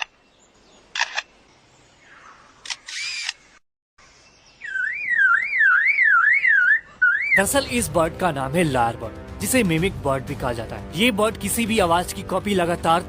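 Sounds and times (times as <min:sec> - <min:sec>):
bird mimicking camera shutter: 0:01.0 - 0:01.3, 0:02.6 - 0:03.4
bird mimicking car alarm: 0:04.6 - 0:07.4.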